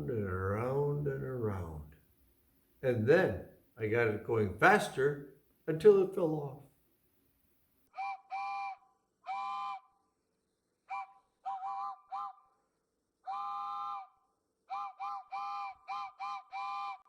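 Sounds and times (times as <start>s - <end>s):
train whistle toots: 8.0s - 9.9s, 10.9s - 12.4s, 13.3s - 17.0s.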